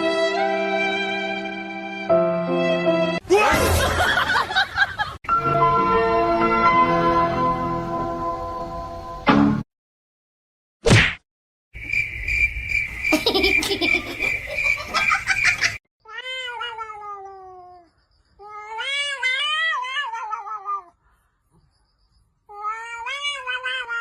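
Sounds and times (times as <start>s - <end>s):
cat yowling: 16.1s - 21.0s, 22.5s - 24.0s.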